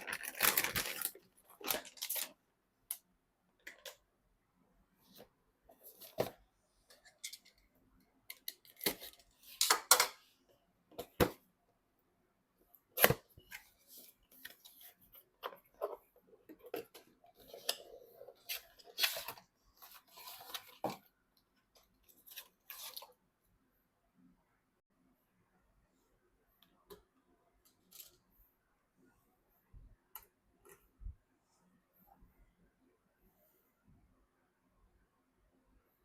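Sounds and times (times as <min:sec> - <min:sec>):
packaging rustling: 0:00.0 - 0:02.3.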